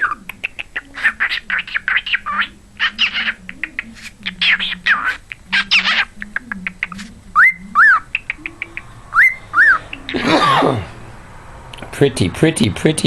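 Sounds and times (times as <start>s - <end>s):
cockatiel chirping: 0.0s - 10.2s
harsh bird call: 6.9s - 11.1s
cockatiel wolf whistle: 7.4s - 9.8s.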